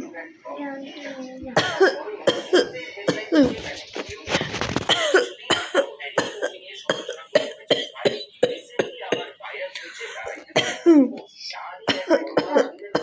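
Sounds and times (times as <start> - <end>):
woman coughing: 1.6 - 3.7, 4.9 - 8.6, 10.6 - 11.1, 11.9 - 13.0.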